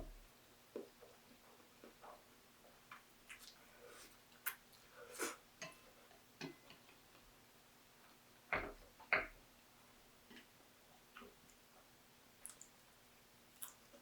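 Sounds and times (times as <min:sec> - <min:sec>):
close-up eating sounds: 0:00.7 - 0:07.4, 0:10.2 - 0:14.0.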